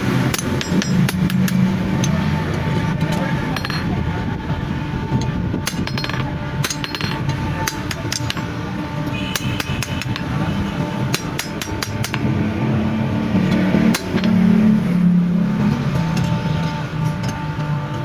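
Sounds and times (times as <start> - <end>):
hammer striking metal on anvil: 0.0 - 2.3, 5.6 - 12.5, 13.4 - 14.8.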